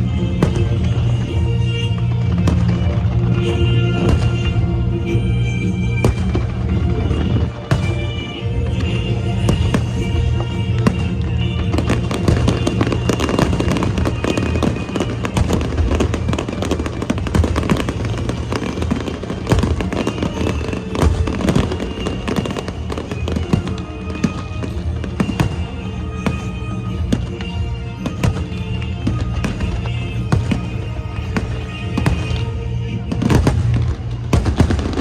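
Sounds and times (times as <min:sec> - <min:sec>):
fireworks crackling and popping: 0:00.0 - 0:35.0.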